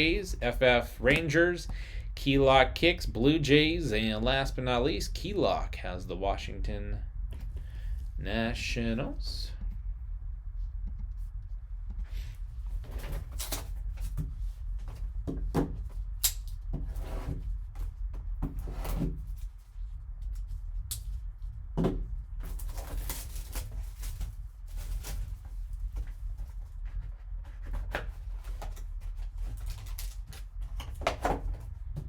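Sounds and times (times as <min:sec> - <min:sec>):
steady low hum: 0:00.0 - 0:32.0
wrapper and cardboard crinkling: 0:28.7 - 0:30.6.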